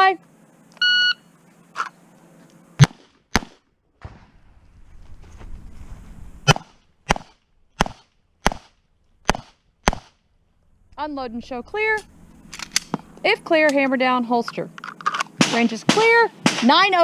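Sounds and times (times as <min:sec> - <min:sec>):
handgun shots: 0:02.8 - 0:03.6, 0:06.5 - 0:10.2
rustling: 0:04.0 - 0:09.3.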